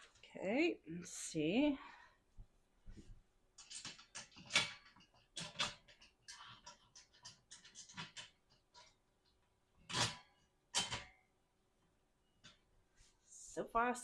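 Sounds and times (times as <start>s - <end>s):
parts clicking and scraping: 3.6s - 11.2s.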